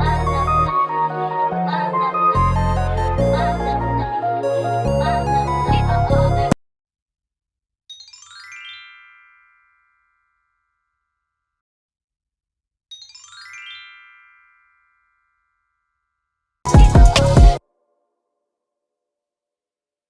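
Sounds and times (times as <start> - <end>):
electronic bell-like chime: 0.0 - 5.7.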